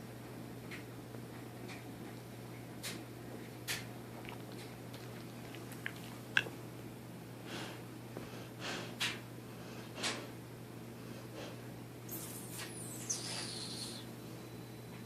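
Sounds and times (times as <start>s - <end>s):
steady low hum: 0.0s - 15.0s
dog snoring: 12.2s - 14.0s.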